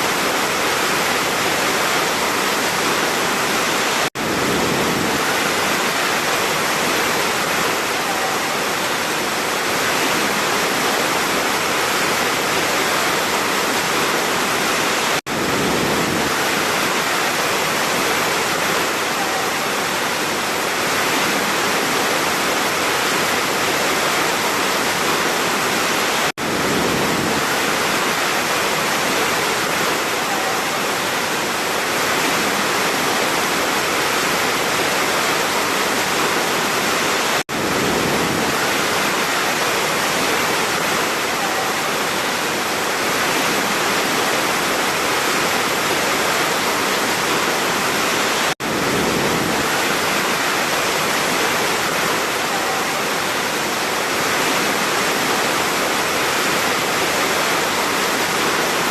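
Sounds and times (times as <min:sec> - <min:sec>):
waterfall rushing: 0:00.0 - 0:58.9.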